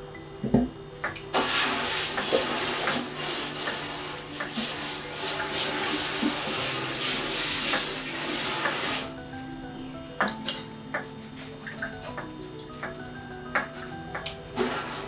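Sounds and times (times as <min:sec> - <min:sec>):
tap water running into sink: 0:01.1 - 0:09.1
pots and pans knocking: 0:10.2 - 0:11.1.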